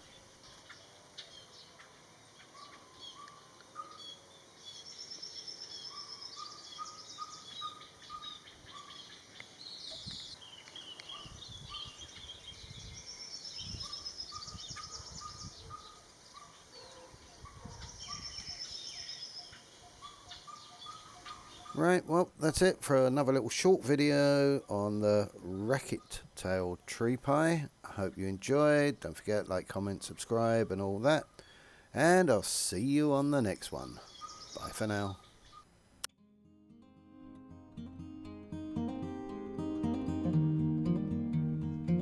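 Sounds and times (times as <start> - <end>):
bird chirps: 0.0 - 22.2, 32.7 - 35.7.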